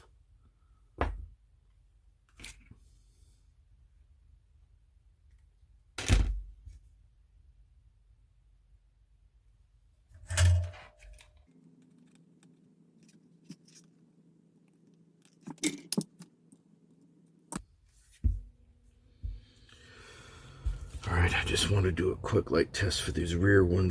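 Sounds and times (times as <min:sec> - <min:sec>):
tools handled on a workbench: 0:10.2 - 0:11.4.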